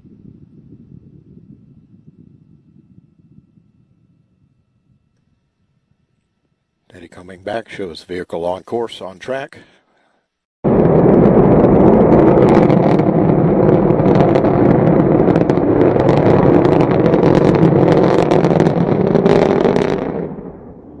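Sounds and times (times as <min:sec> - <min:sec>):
crackling rocket roar: 0:10.6 - 0:21.0.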